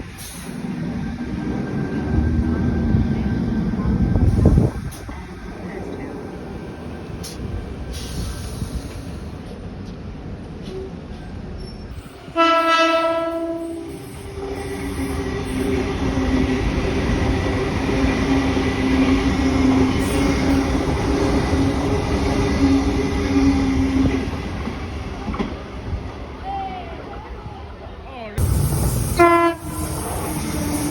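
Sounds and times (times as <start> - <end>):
train running past: 0.0 - 30.9
train horn blast: 12.3 - 14.0, 29.0 - 30.9.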